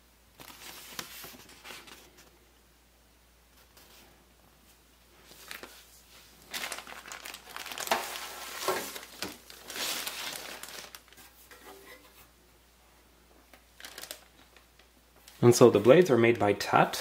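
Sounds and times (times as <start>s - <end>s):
packaging crinkling and rustling: 0.4s - 2.4s, 5.2s - 12.2s, 13.5s - 16.4s.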